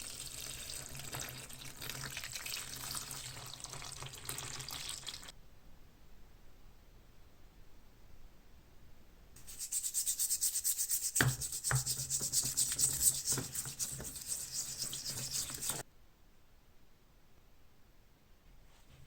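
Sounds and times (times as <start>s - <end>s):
brushing rusty metal parts: 9.4s - 15.8s.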